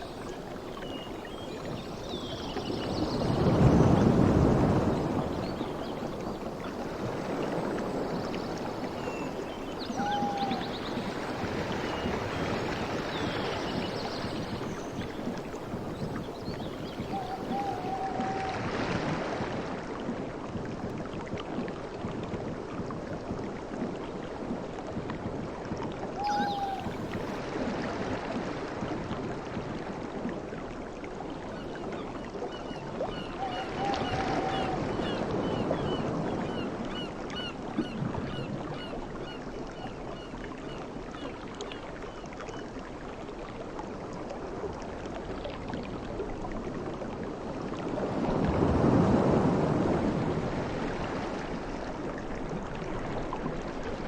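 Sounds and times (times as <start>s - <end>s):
sea waves washing in: 0.0s - 20.4s, 44.7s - 54.0s.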